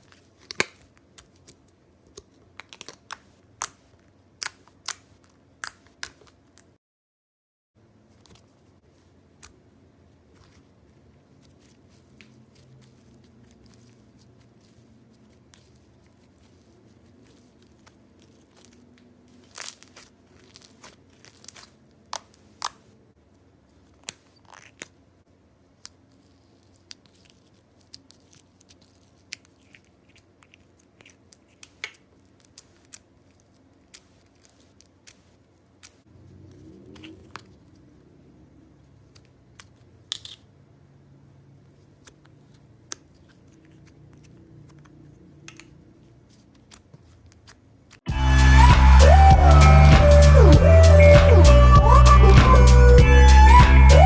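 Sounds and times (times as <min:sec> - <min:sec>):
slime crackling and popping: 0:17.2 - 0:22.8.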